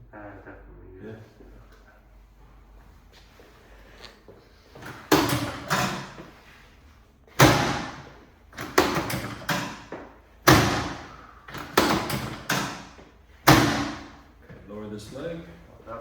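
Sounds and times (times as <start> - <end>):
drop table thuds: 7.4 - 14.2.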